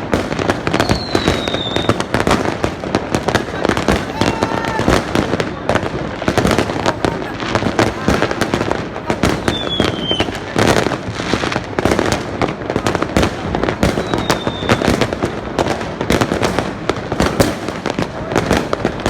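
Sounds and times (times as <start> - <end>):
fireworks bangs and crackles: 0.0 - 19.0
firework whistles: 0.6 - 2.3, 7.5 - 10.4, 13.9 - 15.0.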